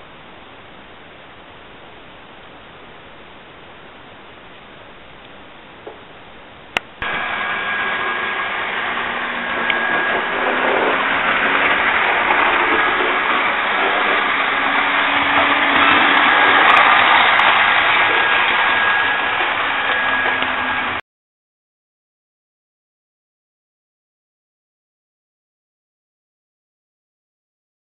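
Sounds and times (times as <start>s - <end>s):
model train running: 7.0s - 21.0s
small fan motor whirring: 7.0s - 21.0s.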